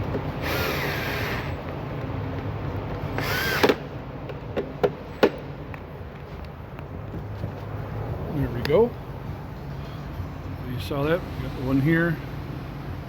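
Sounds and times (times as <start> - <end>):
power drill driving screws: 0.4 - 1.6, 3.1 - 3.8.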